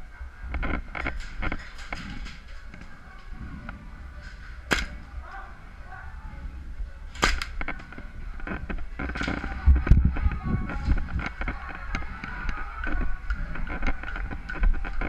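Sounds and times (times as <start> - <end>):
steady low rumble: 0.0 - 15.0
airsoft guns firing: 4.7 - 5.0.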